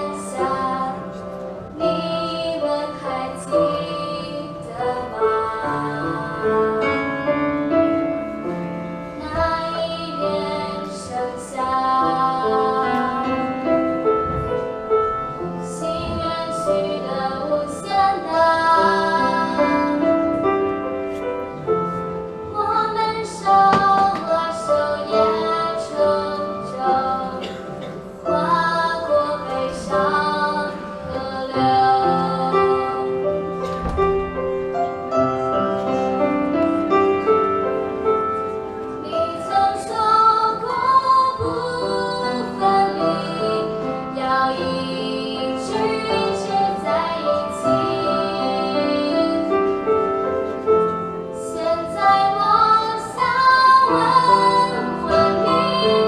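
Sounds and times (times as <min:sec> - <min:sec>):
women singing a slow pop ballad: 0:00.0 - 0:07.0, 0:09.2 - 0:13.6, 0:15.8 - 0:20.1, 0:22.5 - 0:33.3, 0:39.1 - 0:49.6, 0:51.4 - 0:56.0
instrumental accompaniment: 0:00.0 - 0:56.0.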